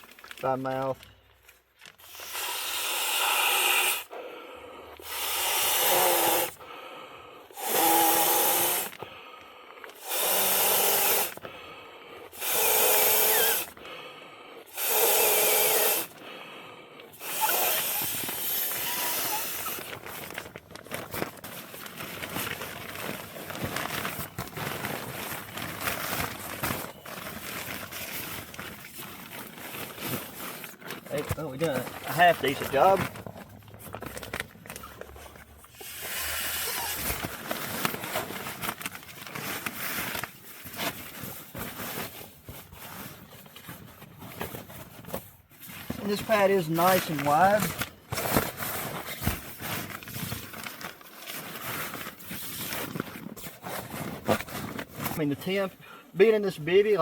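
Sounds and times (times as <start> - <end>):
hissing exhales into a valve: 2.0 - 9.2, 9.8 - 16.4, 17.0 - 19.9, 35.7 - 37.2
quick breaths in: 2.1 - 20.0.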